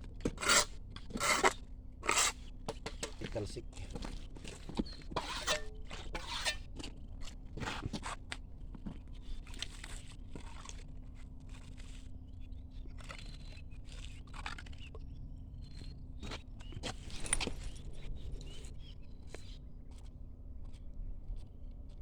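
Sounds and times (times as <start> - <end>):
shovels scraping gravel: 5.2 - 6.6.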